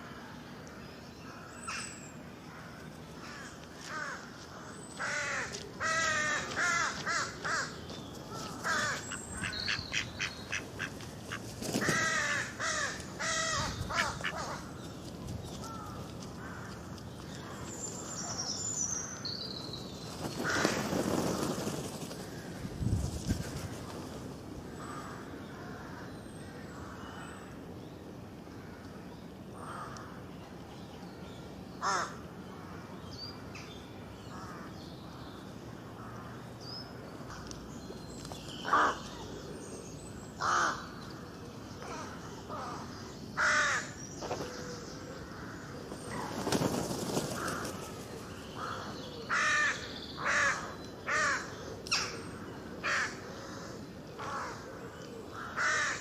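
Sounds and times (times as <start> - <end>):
loud bird calls: 1.2 - 19.2, 31.8 - 35.3, 36.0 - 56.0.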